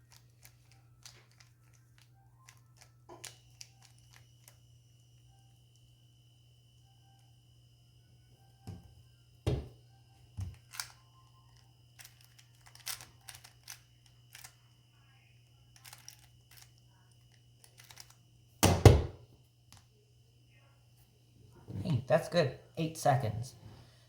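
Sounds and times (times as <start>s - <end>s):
speed cube clicking turns: 10.6s - 11.0s, 12.0s - 14.6s, 15.8s - 16.7s, 17.6s - 18.2s.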